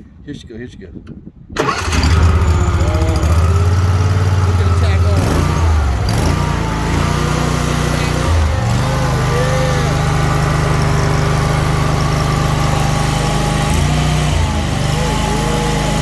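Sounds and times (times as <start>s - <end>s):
mower engine running: 1.6s - 16.0s.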